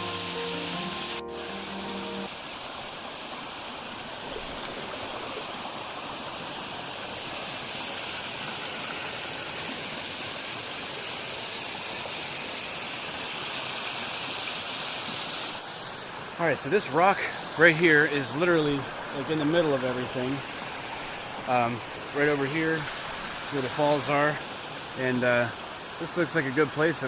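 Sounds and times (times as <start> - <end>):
water rushing over rocks: 0.0 - 27.0.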